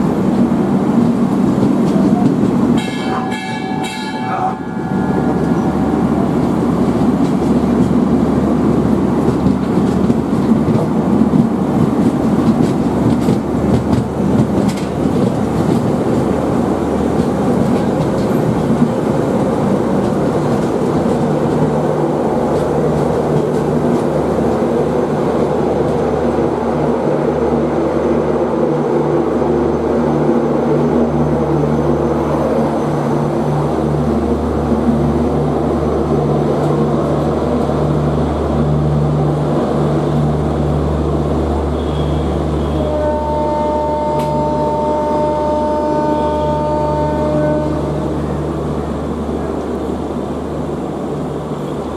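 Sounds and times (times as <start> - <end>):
train wheels clacking over rail joints: 8.7 - 21.7.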